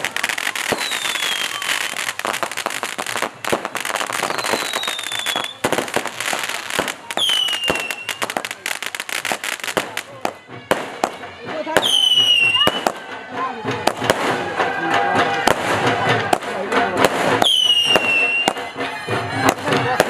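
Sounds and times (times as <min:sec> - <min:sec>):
whistling fireworks: 0:00.0 - 0:11.2, 0:11.8 - 0:13.1, 0:17.0 - 0:20.0
firecrackers crackling and popping: 0:00.0 - 0:20.0.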